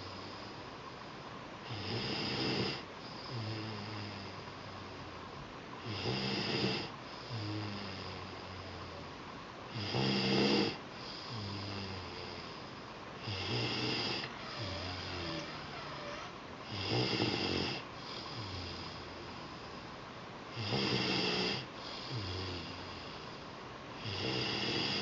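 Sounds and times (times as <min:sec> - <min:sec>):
child snoring: 0:01.7 - 0:04.5, 0:05.8 - 0:09.0, 0:09.7 - 0:19.6, 0:20.6 - 0:23.3, 0:24.0 - 0:25.0.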